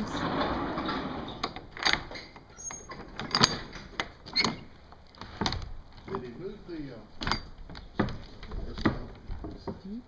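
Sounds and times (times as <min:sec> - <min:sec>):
sharp knocks and clicks: 0:01.4 - 0:06.3, 0:07.2 - 0:09.9.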